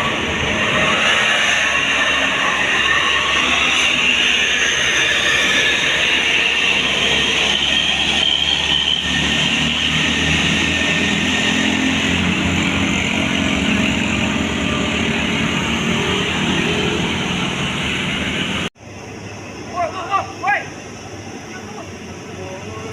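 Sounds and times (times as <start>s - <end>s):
bus passing by: 0.0s - 22.9s.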